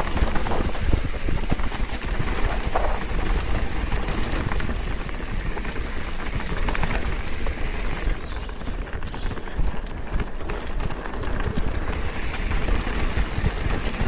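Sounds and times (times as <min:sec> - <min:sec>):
wind on microphone: 0:00.0 - 0:05.2
bike tyres rolling over dirt: 0:00.0 - 0:14.0.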